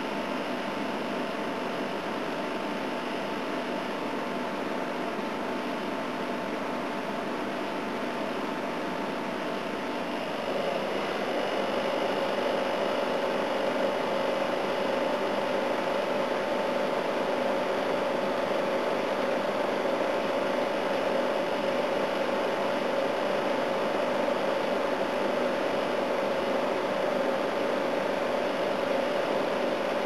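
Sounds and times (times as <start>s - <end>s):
air conditioner fan rushing: 0.0s - 30.0s
compressor humming: 0.0s - 30.0s.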